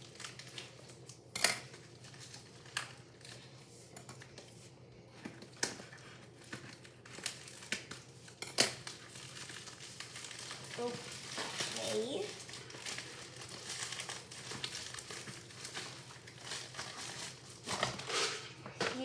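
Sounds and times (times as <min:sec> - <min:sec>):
packaging crinkling: 0:00.0 - 0:03.6, 0:05.7 - 0:18.4.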